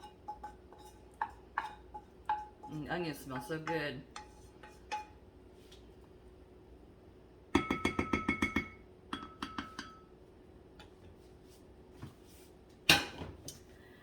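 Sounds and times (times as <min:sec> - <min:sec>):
whisk clinking against bowl: 0:00.0 - 0:05.2.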